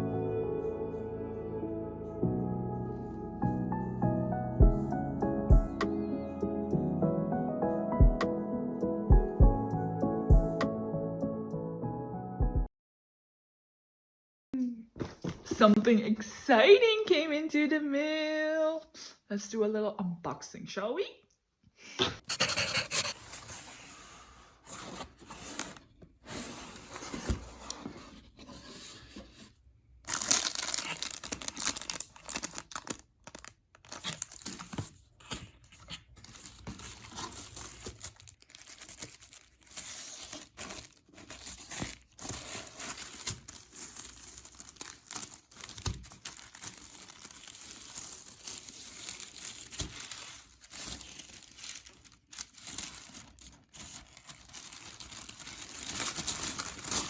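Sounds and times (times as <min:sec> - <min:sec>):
packaging tearing and crinkling: 0:30.1 - 0:35.1, 0:35.7 - 0:57.0.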